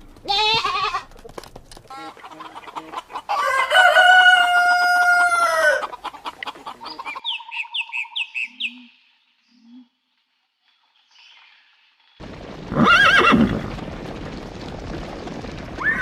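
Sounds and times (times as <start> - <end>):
rooster clucking: 1.9 - 7.4
rooster crowing: 3.3 - 5.9.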